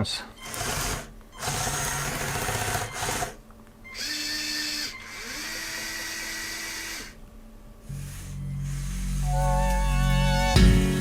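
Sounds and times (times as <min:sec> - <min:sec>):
small electric motor whining: 0:00.4 - 0:07.2, 0:07.8 - 0:09.8.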